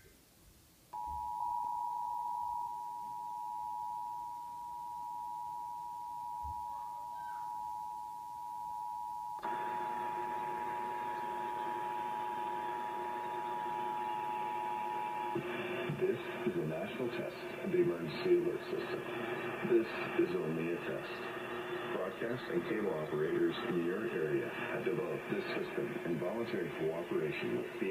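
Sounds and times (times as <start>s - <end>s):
two-tone alarm: 1.0s - 15.4s.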